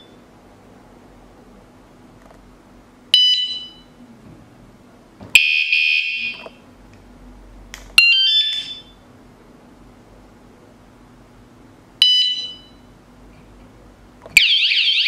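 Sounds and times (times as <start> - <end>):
shrill electronic bike alarm: 5.4 - 6.4, 8.0 - 8.9, 14.4 - 15.0.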